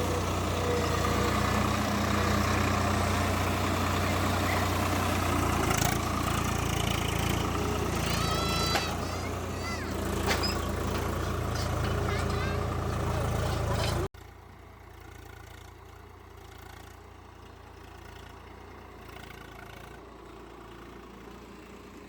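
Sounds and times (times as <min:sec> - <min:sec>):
tractor engine running: 0:00.0 - 0:22.0.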